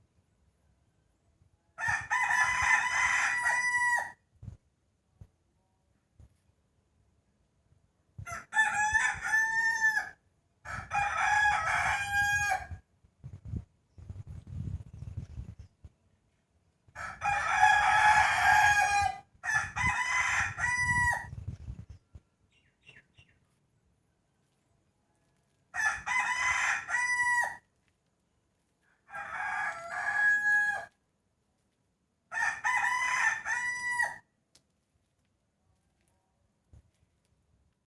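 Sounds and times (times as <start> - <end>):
rooster crowing: 1.8 - 4.2, 8.2 - 12.8, 17.0 - 21.3, 25.2 - 27.7, 28.9 - 31.0, 32.3 - 34.3.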